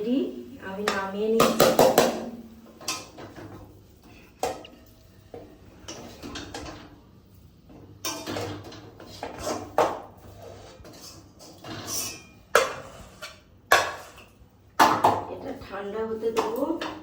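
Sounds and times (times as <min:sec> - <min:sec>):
metal utensils scraping a pan: 0:02.7 - 0:04.4, 0:05.8 - 0:07.0, 0:07.9 - 0:14.4.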